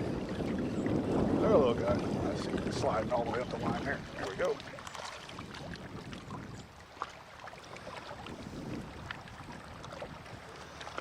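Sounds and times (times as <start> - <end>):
wind buffeting microphone: 0.0 - 6.8, 7.7 - 11.0
water lapping against rocks: 0.0 - 11.0.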